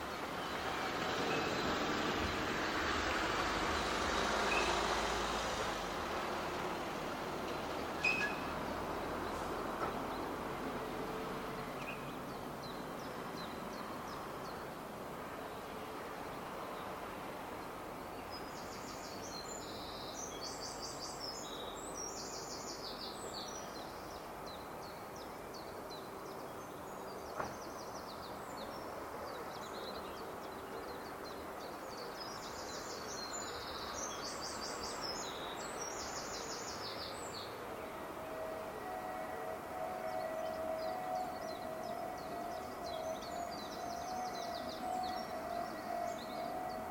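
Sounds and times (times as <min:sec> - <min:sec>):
outdoor background noise: 0:00.0 - 0:46.9
small bird singing: 0:40.0 - 0:46.9.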